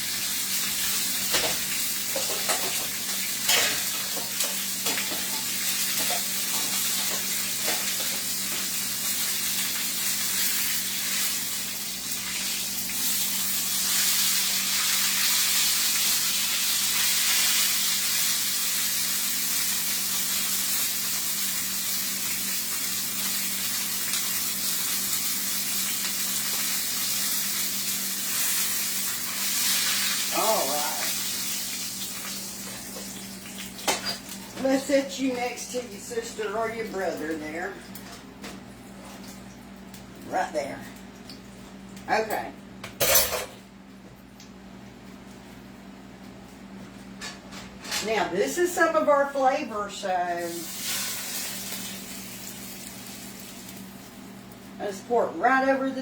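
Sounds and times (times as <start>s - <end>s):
meat sizzling in a pan: 0.0s - 34.4s, 50.4s - 54.8s.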